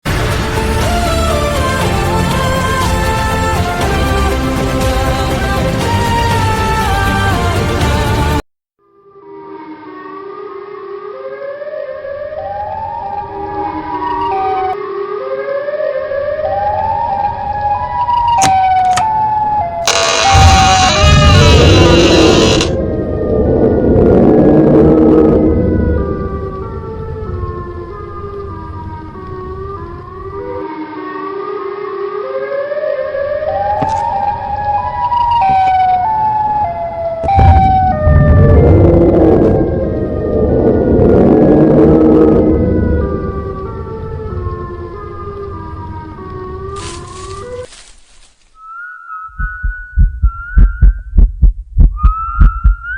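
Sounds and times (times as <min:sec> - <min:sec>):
suspense film score tones: 0:16.2 - 0:47.5
deep rumble: 0:19.9 - 0:30.6, 0:37.3 - 0:47.7, 0:49.3 - 0:52.9
sudden loud noise burst: 0:37.3 - 0:39.8.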